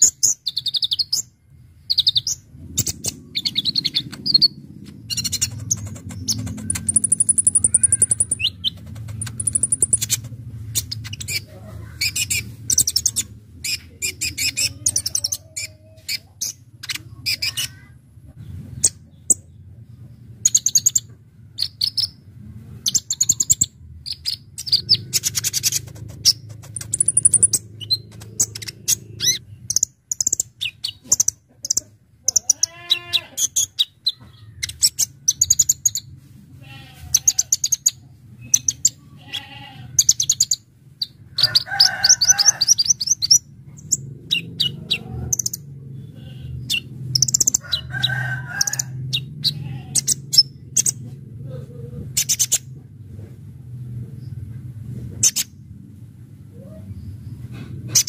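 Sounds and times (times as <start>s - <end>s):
sunbird singing high chirps and trills: 0.0s - 17.8s, 22.9s - 36.1s.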